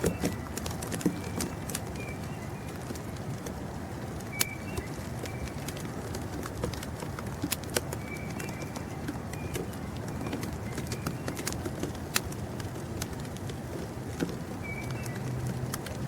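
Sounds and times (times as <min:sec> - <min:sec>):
sharp ticks: 0:04.2 - 0:16.0
high bird chirps: 0:04.3 - 0:05.7.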